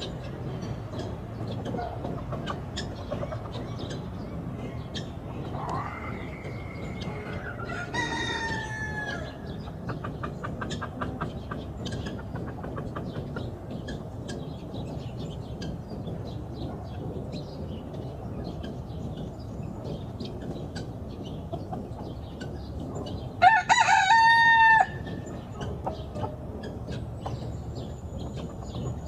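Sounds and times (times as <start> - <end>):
chicken clucks and chirps: 0.0 - 29.0
rooster crowing: 7.1 - 9.3, 23.4 - 25.0.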